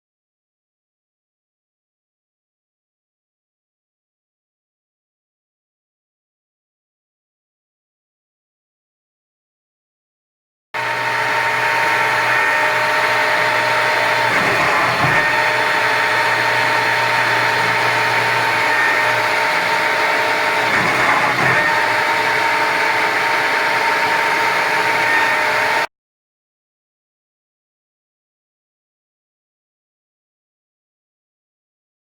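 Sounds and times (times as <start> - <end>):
lathe mechanical hum and whine: 10.8 - 25.9.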